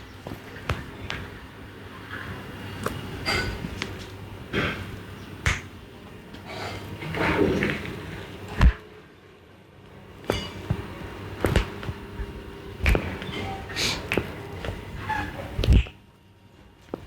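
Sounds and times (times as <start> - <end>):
hand slaps and taps: 5.4 - 5.7.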